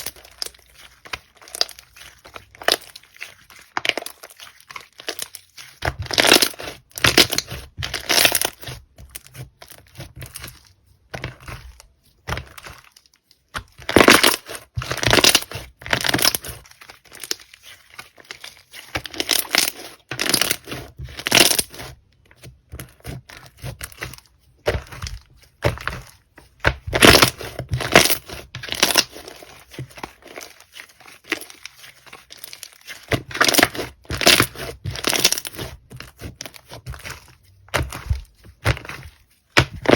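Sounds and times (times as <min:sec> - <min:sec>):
slime crackling and popping: 0:00.0 - 0:10.5, 0:12.6 - 0:17.6, 0:26.6 - 0:29.5, 0:30.1 - 0:38.9.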